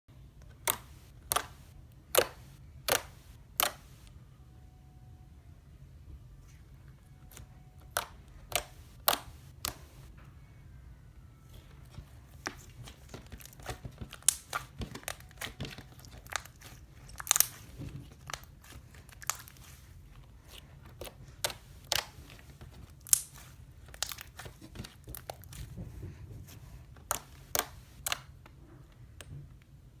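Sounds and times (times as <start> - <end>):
crunchy slime being kneaded: 0.6 - 4.1, 7.3 - 10.1, 11.5 - 28.3.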